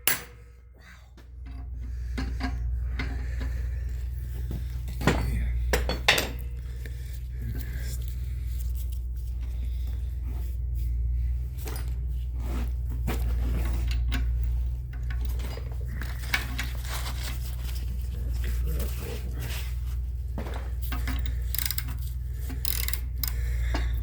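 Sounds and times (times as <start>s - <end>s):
steady low hum: 0.0s - 24.0s
hand tools clinking on metal: 4.9s - 6.7s, 13.2s - 19.8s, 20.4s - 24.0s.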